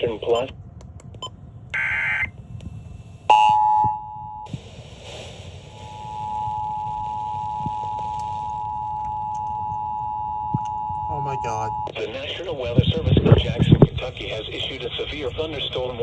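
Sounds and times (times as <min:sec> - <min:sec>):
radio hiss: 0:00.0 - 0:00.6, 0:01.8 - 0:03.6, 0:04.5 - 0:08.8, 0:11.1 - 0:16.0
two-tone alarm signal from radio: 0:01.8 - 0:02.3.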